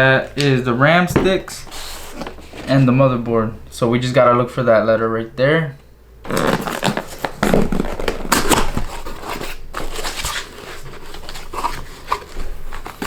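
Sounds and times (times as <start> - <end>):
packaging crackling and rustling: 6.2 - 13.0.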